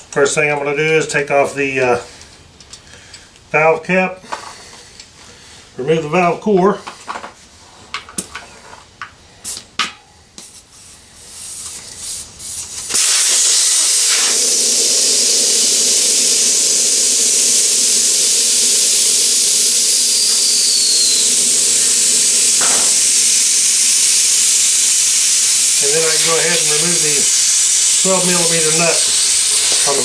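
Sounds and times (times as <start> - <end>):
air hissing out of tyre valve: 10.4 - 30.0.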